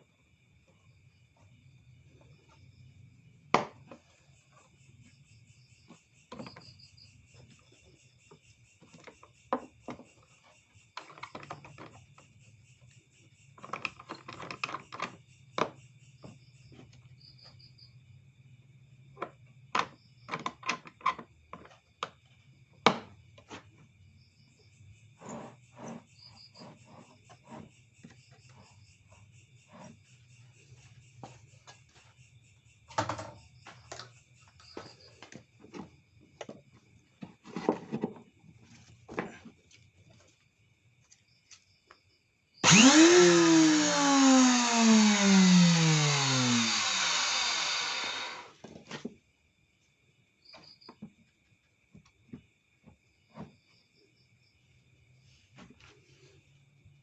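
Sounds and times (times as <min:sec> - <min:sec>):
crickets chirping: 0:00.0 - 0:57.0
objects clicking and knocking: 0:13.6 - 0:15.8.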